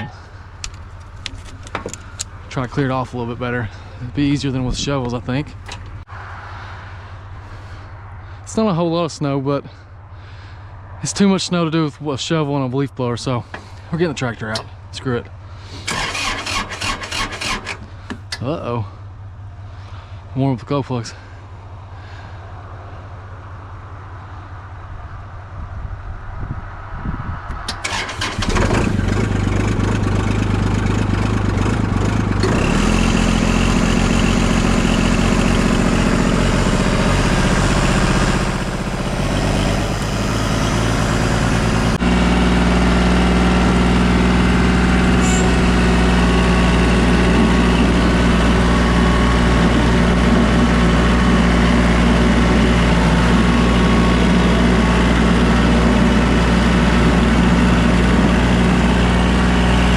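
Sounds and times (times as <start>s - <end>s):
diesel tractor engine idling: 0.0s - 6.1s, 13.3s - 20.2s, 27.8s - 59.9s.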